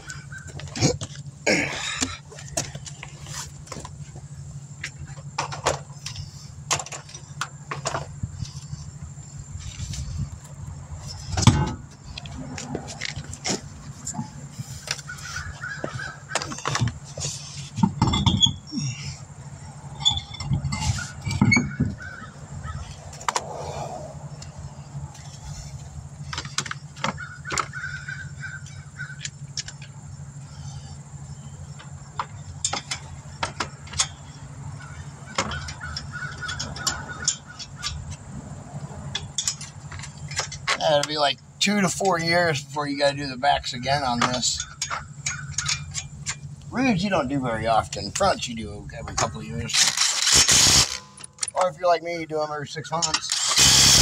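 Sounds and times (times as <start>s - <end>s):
steady low hum: 0.0s - 54.0s
clinks and knocks of car wheel: 1.9s - 8.7s, 11.1s - 18.7s, 20.0s - 23.5s, 26.2s - 30.0s, 31.7s - 38.3s, 39.1s - 41.2s, 43.8s - 46.6s.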